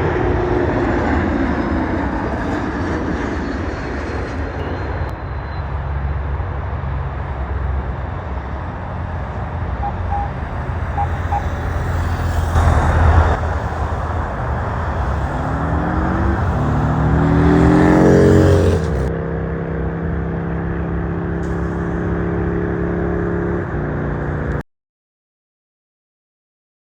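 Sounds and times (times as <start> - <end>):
motor vehicles passing: 0.0 - 24.6
engine accelerating: 7.2 - 19.2.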